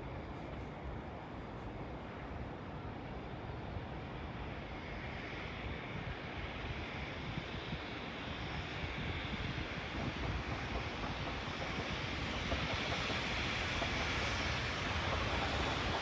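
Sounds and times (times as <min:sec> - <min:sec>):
freight train rumble: 0:00.0 - 0:16.0
train hiss: 0:00.0 - 0:16.0.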